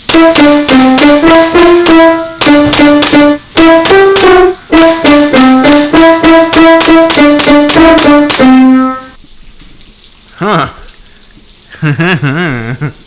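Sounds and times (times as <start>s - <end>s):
melody of sharply struck notes: 0.0s - 9.2s.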